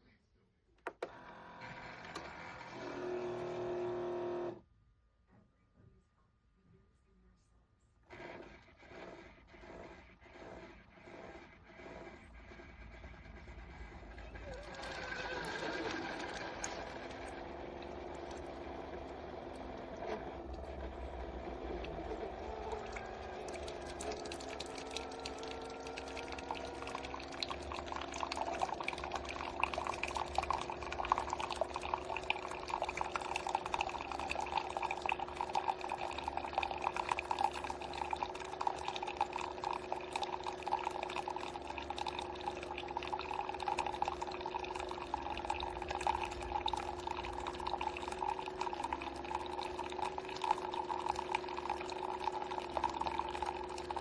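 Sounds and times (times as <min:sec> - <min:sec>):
pump humming: 0:01.0 - 0:04.6, 0:13.9 - 0:54.0
hot water pouring and splashing: 0:14.4 - 0:54.0.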